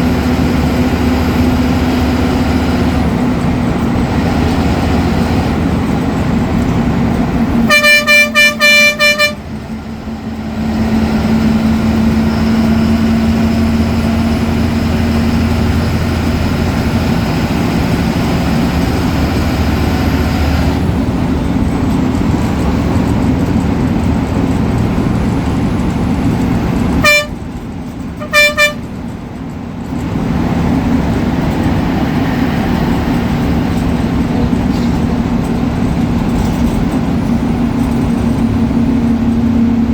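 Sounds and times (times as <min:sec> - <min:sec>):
bus diesel engine running: 0:00.0 - 0:39.9
bus horn blasts: 0:07.4 - 0:09.7, 0:26.8 - 0:29.1.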